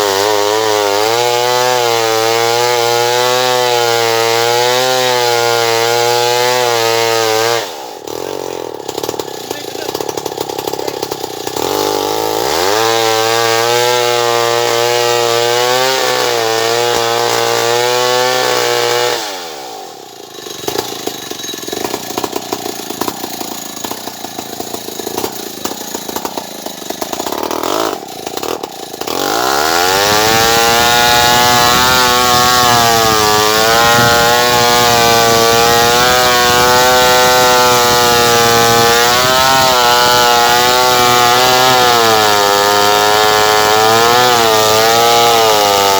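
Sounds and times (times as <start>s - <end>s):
chainsaw revving: 0.0s - 45.9s.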